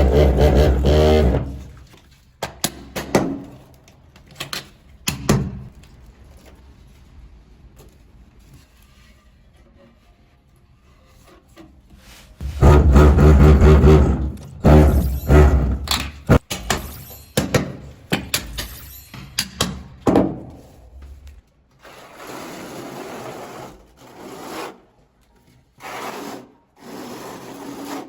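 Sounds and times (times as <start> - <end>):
scraping rubbing strokes: 8.4 - 15.9.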